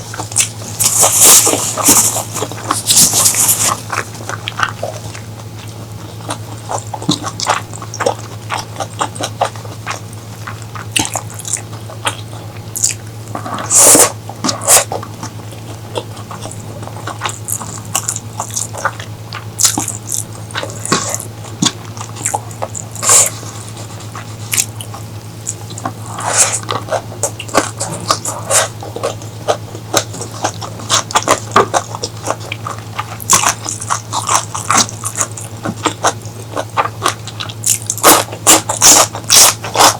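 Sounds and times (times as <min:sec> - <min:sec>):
person chewing food: 0:00.0 - 0:39.9
steady low hum: 0:00.0 - 0:39.9.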